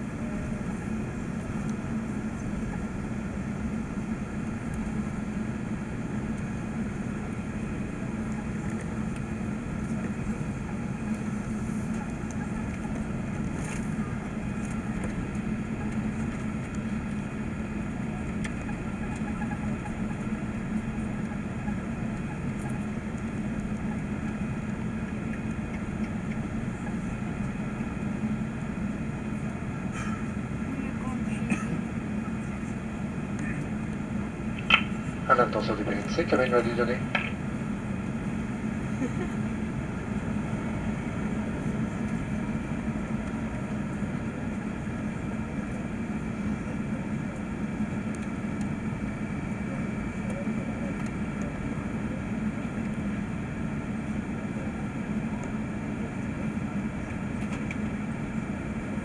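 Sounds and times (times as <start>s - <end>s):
airplane cabin engine hum: 0.0s - 59.0s
faint click: 34.6s - 35.0s.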